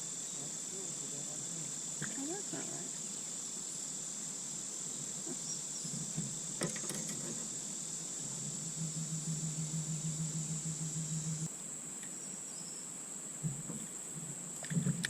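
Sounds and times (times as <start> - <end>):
insects trilling: 0.0 - 15.0
low hum: 7.5 - 11.6.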